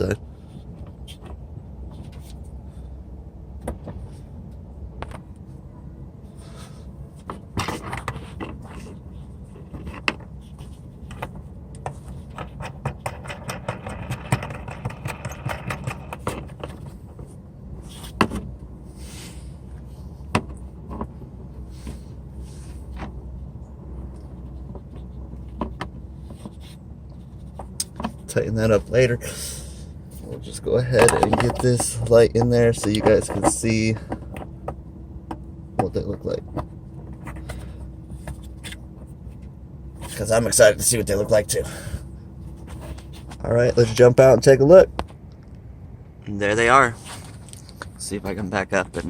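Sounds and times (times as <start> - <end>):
steady low hum: 0.0 - 49.0
plastic clicks knocks and scraping: 9.6 - 17.0, 31.0 - 35.9.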